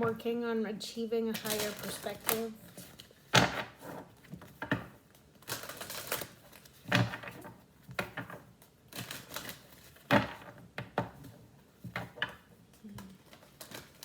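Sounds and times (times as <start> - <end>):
cards slapping on a table: 1.3 - 13.4.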